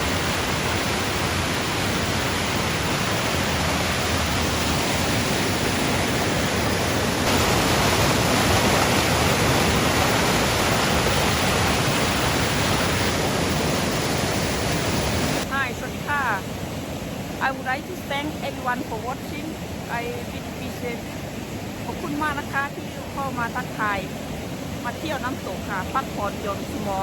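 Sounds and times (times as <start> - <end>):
waterfall rushing: 0.0 - 18.6.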